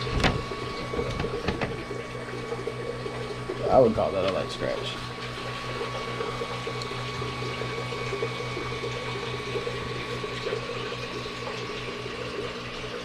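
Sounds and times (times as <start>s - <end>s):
small motor humming: 0.0s - 13.0s.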